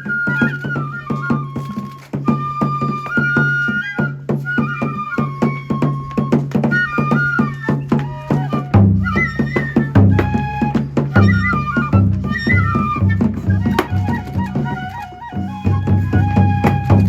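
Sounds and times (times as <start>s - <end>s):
bamboo flute melody: 0.0s - 17.0s
heavy low drumming: 4.3s - 17.0s
drum strikes: 5.2s - 14.9s.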